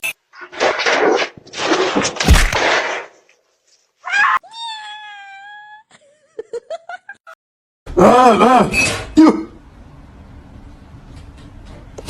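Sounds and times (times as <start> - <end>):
cat meowing: 4.0 - 5.8.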